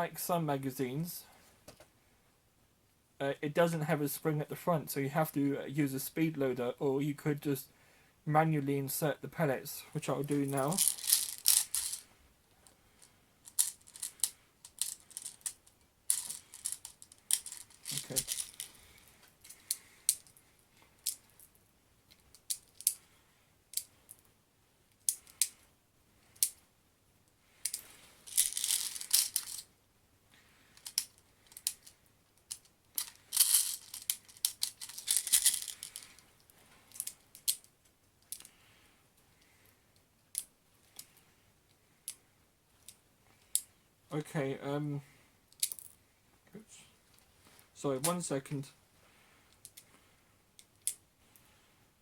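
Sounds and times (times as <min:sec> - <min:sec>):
pellets rattling: 0:10.2 - 0:12.0, 0:13.5 - 0:19.0, 0:28.2 - 0:29.6, 0:33.0 - 0:36.2.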